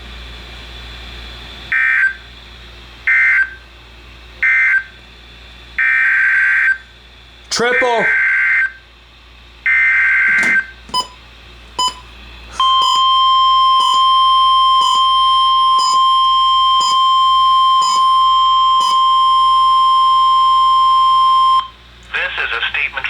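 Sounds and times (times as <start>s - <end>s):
steady warning alarm tone: 1.7s - 2.3s, 3.0s - 3.6s, 4.4s - 5.0s, 5.8s - 6.8s, 7.5s - 8.8s, 9.6s - 21.8s
short beeps: 10.3s - 11.2s, 11.8s - 21.7s.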